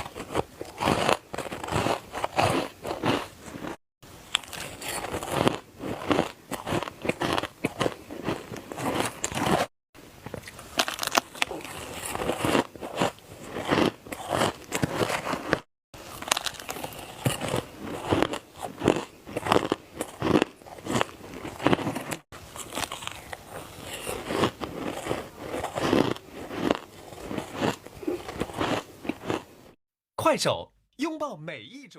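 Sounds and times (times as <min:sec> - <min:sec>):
ice being chewed: 0:00.0 - 0:29.5.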